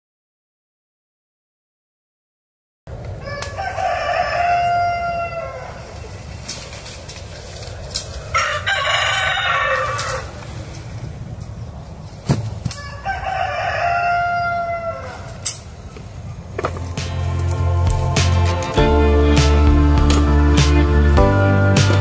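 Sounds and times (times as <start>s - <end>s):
rooster crowing: 3.2s - 6.2s, 8.2s - 10.5s, 12.8s - 15.4s.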